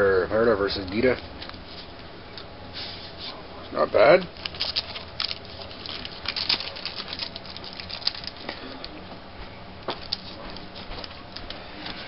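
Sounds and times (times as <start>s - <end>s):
faint steady hum: 0.0s - 12.0s
cards rustling and clicking: 4.3s - 9.0s, 9.9s - 12.0s.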